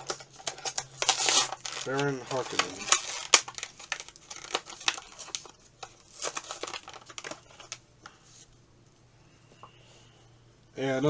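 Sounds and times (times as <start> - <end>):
plastic packaging crinkling: 0.0 - 8.6.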